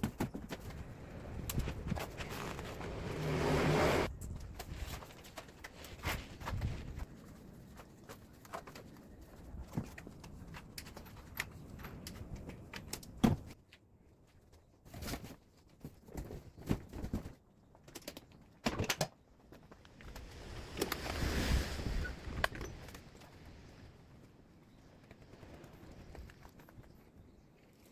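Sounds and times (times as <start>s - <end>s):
scraping and rustling: 0.0s - 4.1s.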